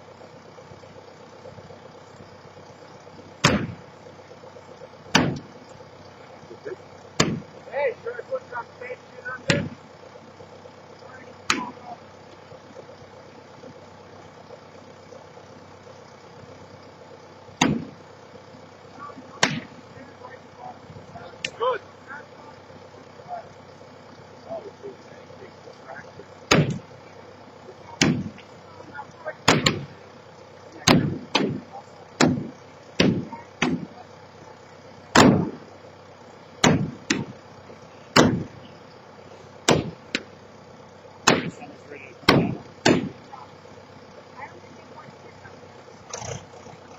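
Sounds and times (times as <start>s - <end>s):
engine running: 0.0s - 46.9s
loud demolition bangs: 26.5s - 26.8s, 28.0s - 28.4s, 30.8s - 34.0s, 35.1s - 35.6s, 36.6s - 37.4s, 38.1s - 38.6s, 39.6s - 40.2s, 41.2s - 43.2s.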